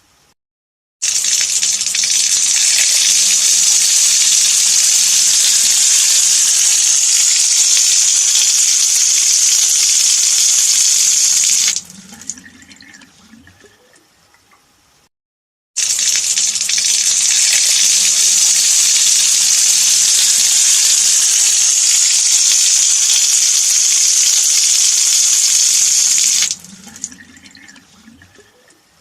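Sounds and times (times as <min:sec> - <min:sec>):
tap water running into sink: 0:01.0 - 0:13.7, 0:15.8 - 0:28.4
water trickling and dripping: 0:07.3 - 0:14.7, 0:21.6 - 0:29.0.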